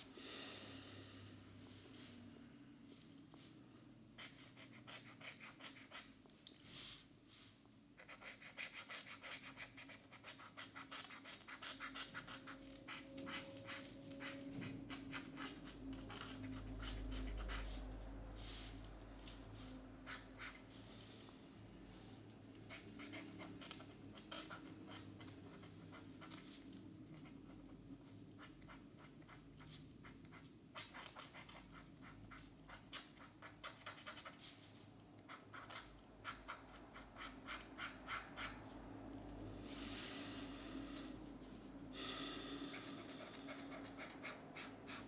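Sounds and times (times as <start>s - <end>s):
felt-tip markers scratching paper: 4.2s - 6.1s, 8.0s - 17.9s, 22.7s - 34.6s, 35.2s - 38.6s, 42.8s - 45.0s.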